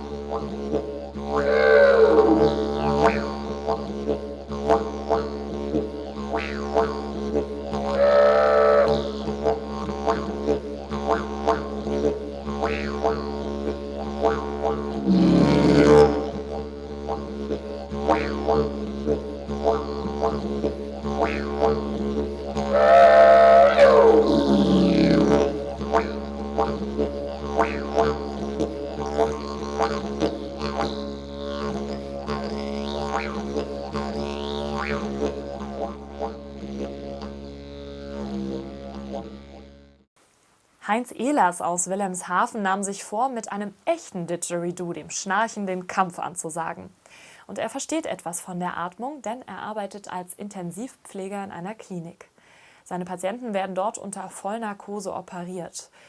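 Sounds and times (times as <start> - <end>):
didgeridoo drone: 0.0 - 40.0
rough didgeridoo blast: 0.0 - 40.1.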